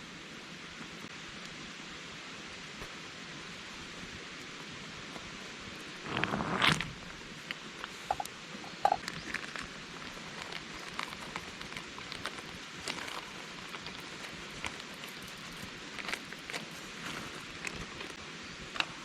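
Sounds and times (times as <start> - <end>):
mountain stream rushing: 0.4 - 19.0
small clicks and ticks: 7.4 - 18.9.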